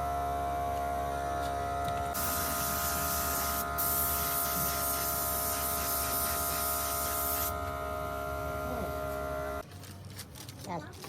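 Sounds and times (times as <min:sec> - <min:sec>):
compressed air hissing: 0:02.2 - 0:07.6.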